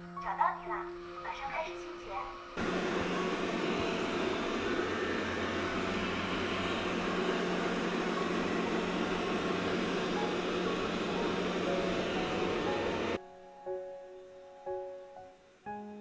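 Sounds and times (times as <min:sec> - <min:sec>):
robot vacuum whirring: 0:02.1 - 0:13.2.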